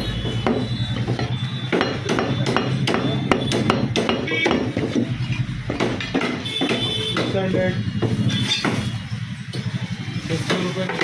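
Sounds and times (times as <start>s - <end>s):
cleaver chopping meat and bone: 0.0s - 8.9s.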